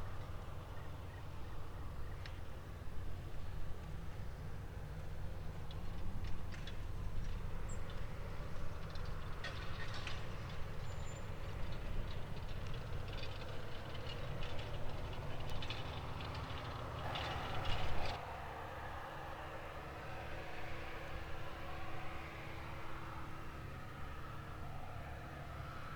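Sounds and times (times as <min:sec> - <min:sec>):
tractor diesel engine running: 0:10.9 - 0:18.6.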